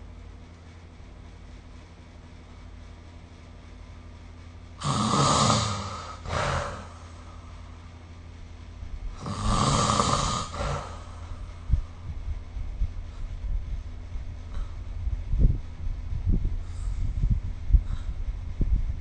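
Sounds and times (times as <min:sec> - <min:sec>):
person snoring: 0:04.8 - 0:07.3, 0:09.2 - 0:11.4.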